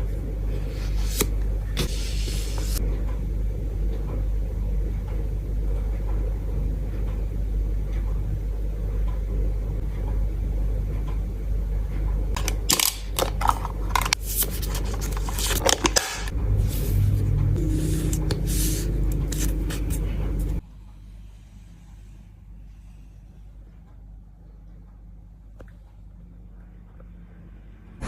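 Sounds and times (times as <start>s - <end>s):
steady low hum: 0.0s - 28.0s
card packaging rustling and clicking: 12.4s - 16.3s.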